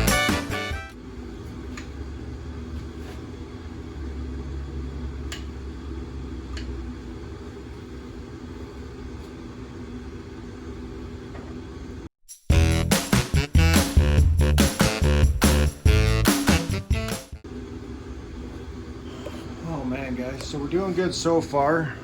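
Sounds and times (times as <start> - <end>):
low workshop hum: 0.0 - 12.1, 17.4 - 22.0.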